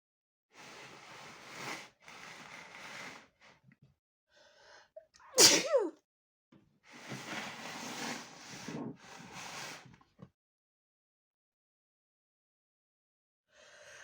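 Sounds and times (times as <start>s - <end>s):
person sneezing: 5.4s - 6.0s.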